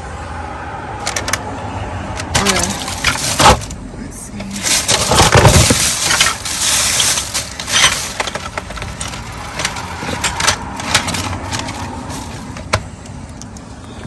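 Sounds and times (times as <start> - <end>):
objects knocking together: 1.0 - 1.4, 2.2 - 3.8, 4.5 - 12.9
rustling through discarded items: 1.0 - 1.4, 2.2 - 14.0.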